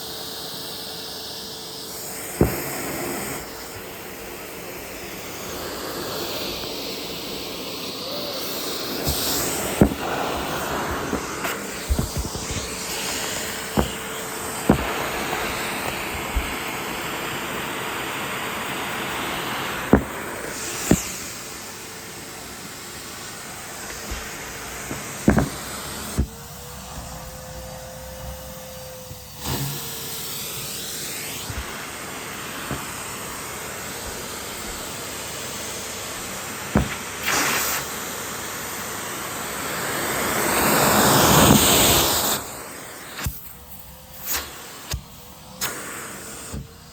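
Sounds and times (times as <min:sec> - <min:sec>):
vacuum cleaner running: 0:00.0 - 0:46.9
vacuum nozzle clicks and knocks: 0:09.0 - 0:16.6, 0:19.9 - 0:21.2, 0:23.9 - 0:26.4, 0:36.8 - 0:37.1.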